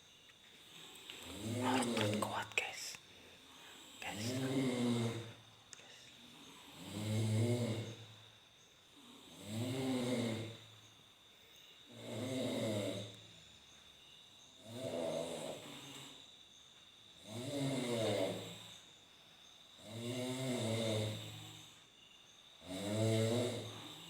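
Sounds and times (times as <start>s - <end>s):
person snoring: 1.2s - 2.8s, 4.0s - 5.4s, 6.7s - 8.0s, 9.1s - 10.6s, 11.9s - 13.1s, 14.6s - 16.1s, 17.2s - 18.6s, 19.8s - 21.6s, 22.6s - 24.0s.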